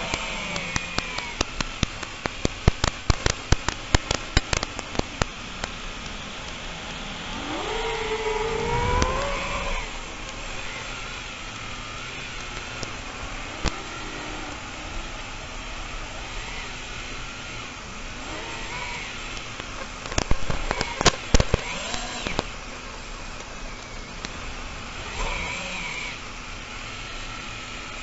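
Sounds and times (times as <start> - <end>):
rapid sharp clicks: 0.0 - 18.4, 19.1 - 26.2
steady hiss: 0.0 - 28.0
motor-like whine rising: 5.3 - 28.0.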